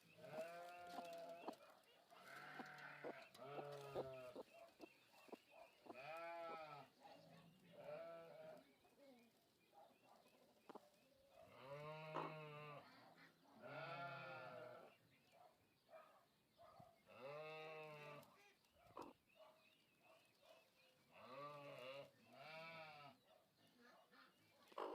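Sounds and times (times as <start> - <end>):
drawn-out animal calls: 0.2 - 7.0.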